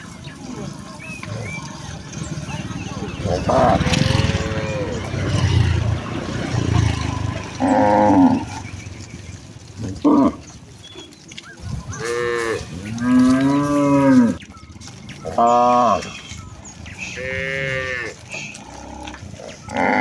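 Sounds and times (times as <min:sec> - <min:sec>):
cattle mooing: 0:00.6 - 0:08.9, 0:09.7 - 0:10.7, 0:11.8 - 0:14.4, 0:15.2 - 0:16.4, 0:17.0 - 0:20.0.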